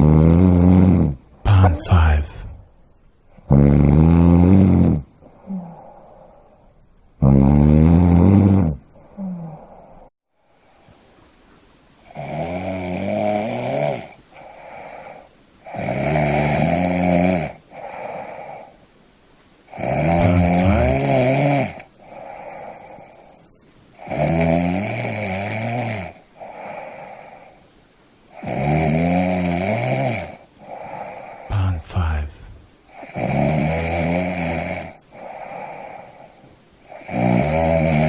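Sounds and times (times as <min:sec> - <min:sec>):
person snoring: 0:00.0 - 0:02.7, 0:03.4 - 0:06.4, 0:07.2 - 0:10.1, 0:12.1 - 0:18.7, 0:19.7 - 0:23.4, 0:24.0 - 0:27.6, 0:28.3 - 0:38.0.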